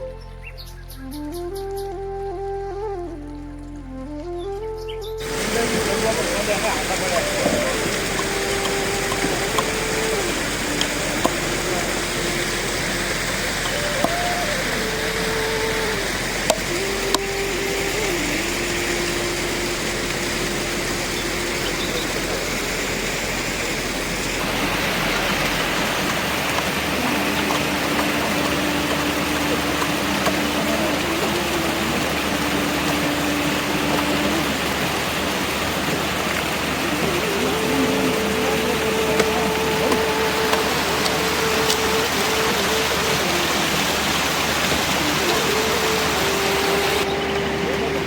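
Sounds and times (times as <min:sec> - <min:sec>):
faint held melody: 0:00.0 - 0:48.0
rushing water: 0:00.0 - 0:48.0.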